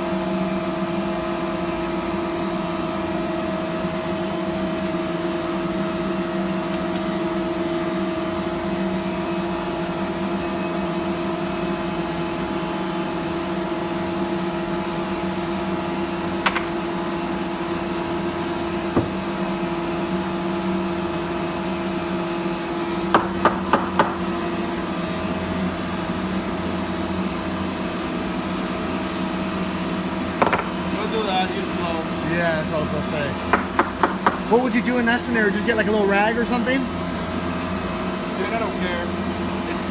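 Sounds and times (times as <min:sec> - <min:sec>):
sharp taps of a tool: 0:16.5 - 0:16.8, 0:30.4 - 0:30.7, 0:33.5 - 0:34.5.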